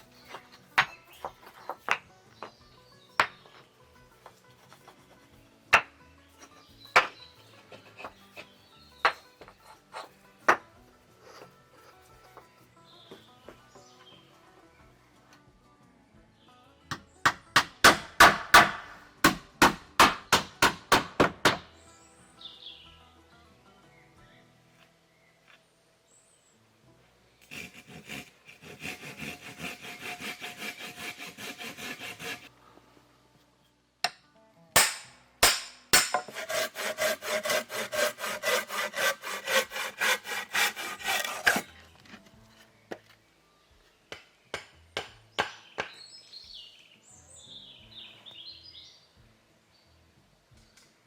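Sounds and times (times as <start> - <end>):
hand saw cutting wood: 0.0 - 2.6, 27.4 - 32.5, 34.8 - 42.3
sharp knocks: 34.8 - 36.7
bird chirping: 45.4 - 50.0.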